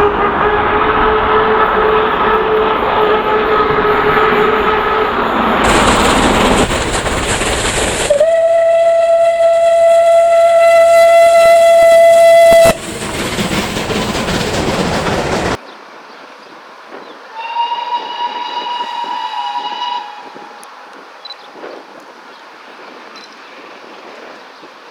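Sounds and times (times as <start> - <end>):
steam locomotive whistle: 0.0 - 6.6, 8.0 - 12.8, 17.3 - 21.4
train noise: 0.0 - 24.9
fainter higher whistle: 8.1 - 12.8, 17.4 - 21.5.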